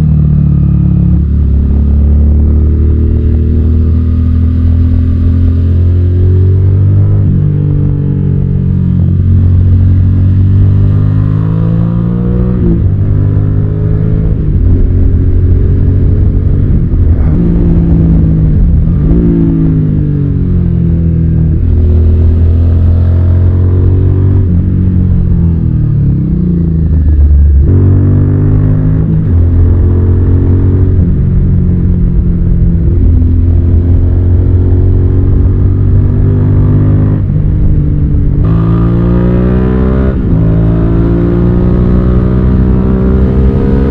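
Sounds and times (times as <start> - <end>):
motorcycle engine accelerating: 0.0 - 43.9.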